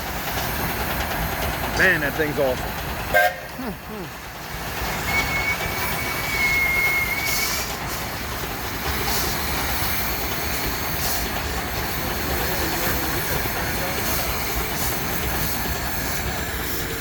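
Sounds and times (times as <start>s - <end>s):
steam engine low rumble: 0.0s - 17.0s
steam hissing: 0.0s - 17.0s
thin high whistle tone: 5.0s - 7.7s.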